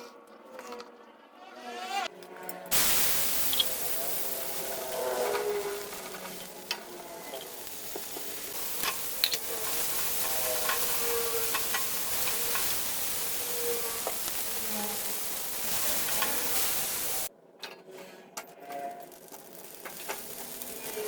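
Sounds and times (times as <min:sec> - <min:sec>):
food sizzling in a pan: 0:02.7 - 0:17.3, 0:19.0 - 0:21.0.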